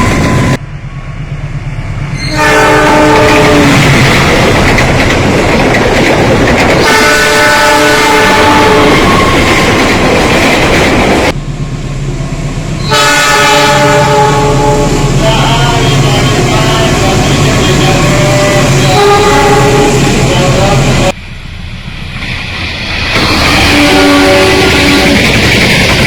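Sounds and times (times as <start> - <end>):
passing train rushing and clattering: 0.0 - 26.0
train horn blasts: 2.2 - 3.8, 6.8 - 9.5, 12.8 - 16.6, 17.2 - 20.6, 23.5 - 25.2.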